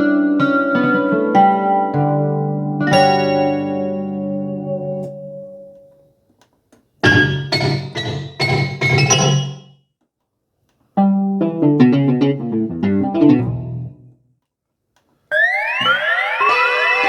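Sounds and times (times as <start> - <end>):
bell-like keyboard chords: 2.8 - 5.0, 15.3 - 17.0
synthesizer held chord: 15.3 - 17.0.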